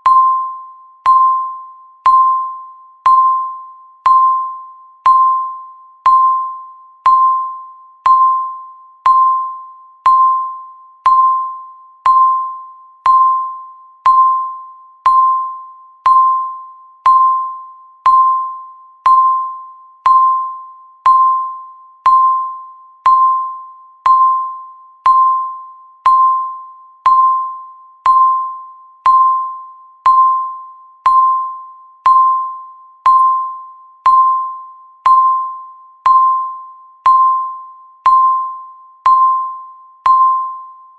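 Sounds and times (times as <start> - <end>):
timer ticking: 7.0 - 8.5, 9.1 - 17.5, 18.1 - 20.5, 21.1 - 23.5, 24.1 - 29.5, 30.1 - 40.5.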